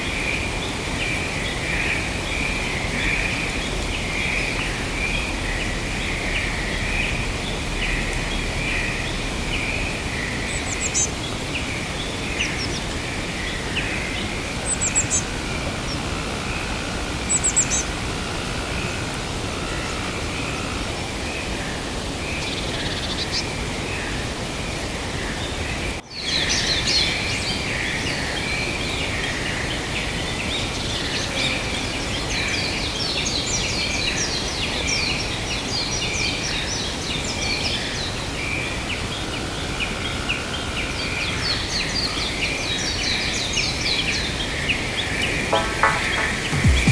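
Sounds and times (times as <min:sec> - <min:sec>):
steady background chorus and hiss: 0:00.0 - 0:46.9
birds chirping: 0:01.5 - 0:18.1, 0:43.0 - 0:46.9.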